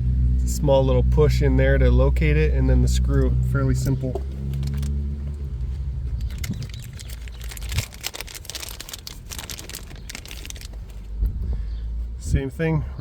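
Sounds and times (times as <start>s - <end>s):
low background rumble: 0.0s - 13.0s
small clicks and rustles of handling: 4.1s - 11.1s.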